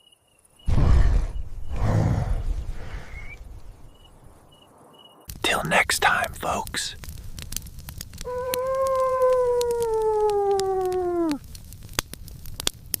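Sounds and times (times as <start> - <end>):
long howl sinking in pitch: 8.3 - 11.4.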